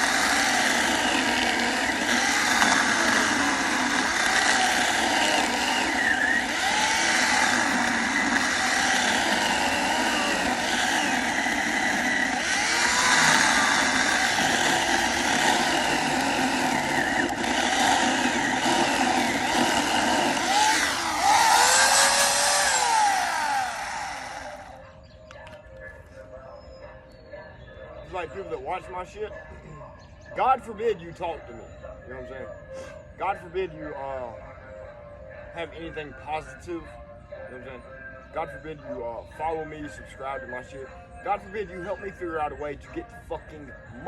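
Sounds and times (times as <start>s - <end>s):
electric chainsaw cutting wood: 0.0s - 24.9s.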